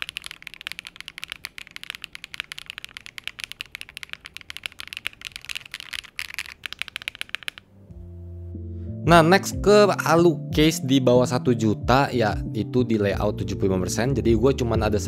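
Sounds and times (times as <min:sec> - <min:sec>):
mechanical keyboard typing: 0:00.0 - 0:07.7.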